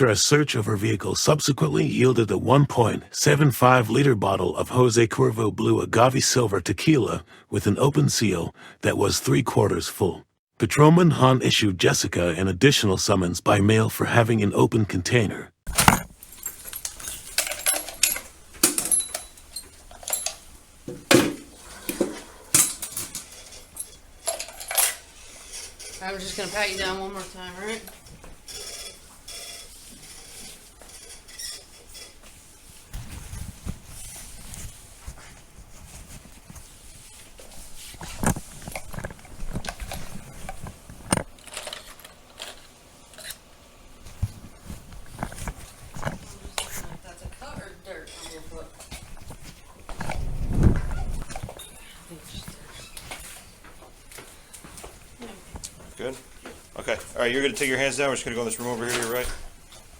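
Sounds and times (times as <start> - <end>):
metal clacks: 15.7 - 26.6
rustling: 15.7 - 59.9
metallic clinks: 15.8 - 20.8, 22.1 - 25.9.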